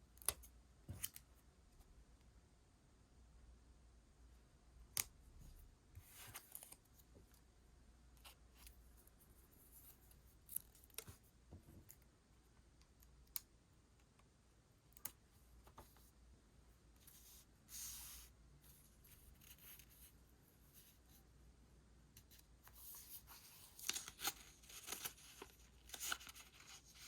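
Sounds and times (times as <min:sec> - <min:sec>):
paper rustling: 0:22.7 - 0:27.0.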